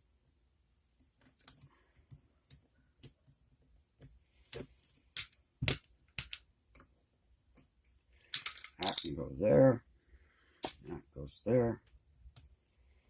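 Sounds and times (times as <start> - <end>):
metal parts clicking: 8.2 - 9.2.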